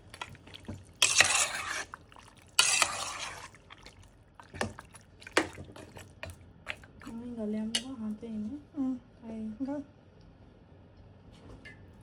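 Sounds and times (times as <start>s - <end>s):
spoon stirring in metal pot: 0.0s - 7.9s.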